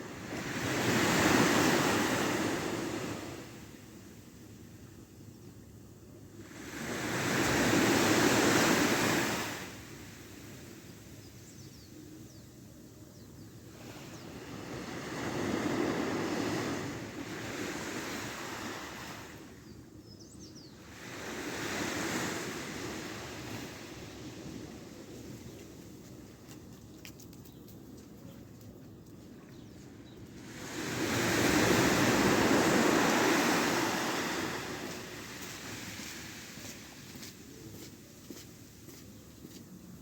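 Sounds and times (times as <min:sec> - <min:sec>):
waves breaking on beach: 0:00.0 - 0:03.8, 0:06.5 - 0:10.8, 0:13.8 - 0:19.4, 0:20.9 - 0:25.4, 0:30.4 - 0:38.8.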